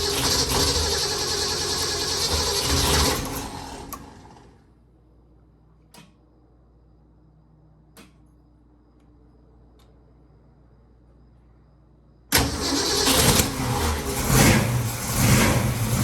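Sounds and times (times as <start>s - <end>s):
engine turning over: 0.0s - 4.6s, 12.3s - 16.0s.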